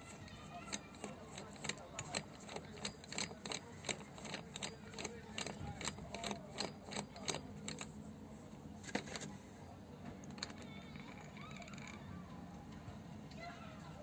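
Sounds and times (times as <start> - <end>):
metal tools clicking and clinking: 0.1 - 8.0, 10.2 - 12.0.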